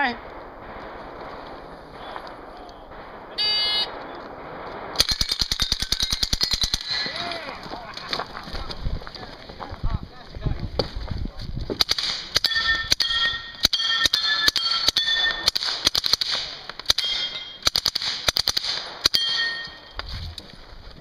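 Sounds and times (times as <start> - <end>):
steel targets clanging: 16.9 - 17.6, 19.1 - 20.0.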